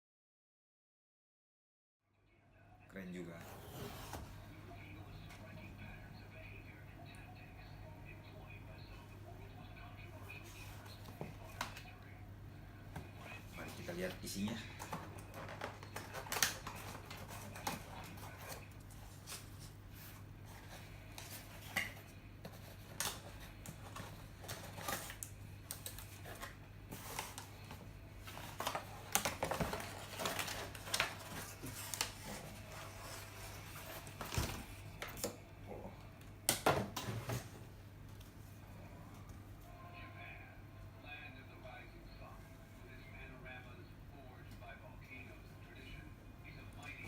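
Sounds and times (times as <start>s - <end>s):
steady low hum: 2.3s - 47.0s
cardboard and wrapping rustling: 3.3s - 4.4s, 13.0s - 35.2s.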